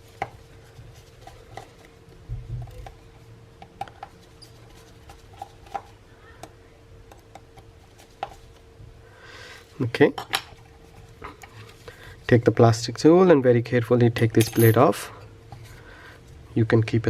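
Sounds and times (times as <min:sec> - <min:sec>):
faint steady hum: 0:00.0 - 0:17.0
metal tools tapping on phone parts: 0:14.3 - 0:14.9.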